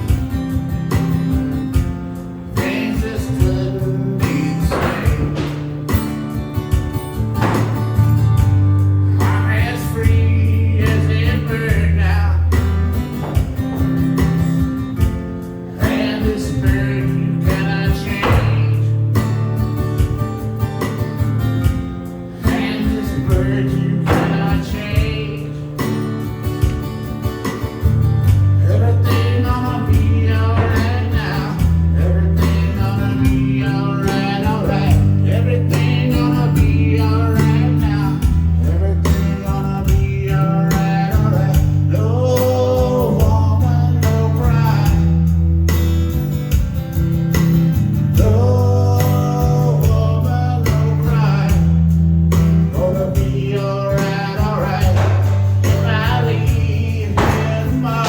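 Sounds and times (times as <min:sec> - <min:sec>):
deep bass line: 0:00.0 - 0:58.0
guitar: 0:00.0 - 0:58.0
person singing: 0:02.5 - 0:05.7, 0:09.1 - 0:12.6, 0:15.8 - 0:18.9, 0:22.3 - 0:25.9, 0:28.6 - 0:45.2, 0:48.2 - 0:51.8, 0:52.7 - 0:58.0.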